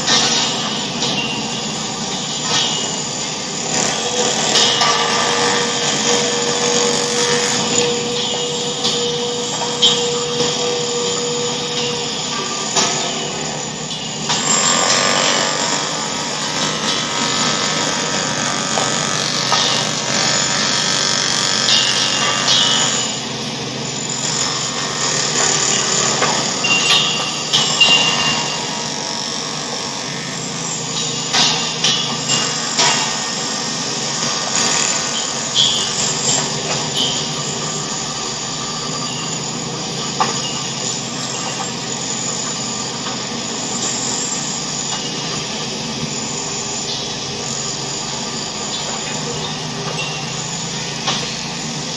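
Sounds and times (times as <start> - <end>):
din of mechanical noise: 0.0 - 51.9
short high whines: 5.6 - 13.8.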